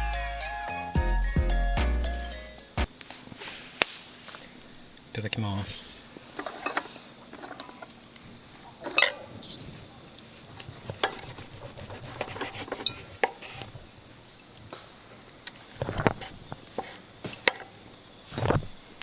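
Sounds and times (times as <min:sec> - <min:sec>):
cutlery scraping on a dish: 0:06.4 - 0:07.9, 0:10.8 - 0:13.6.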